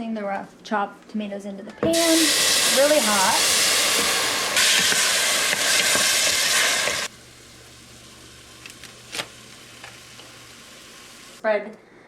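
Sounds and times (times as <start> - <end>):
tomatoes sizzling in a hot pan: 1.9 - 11.4.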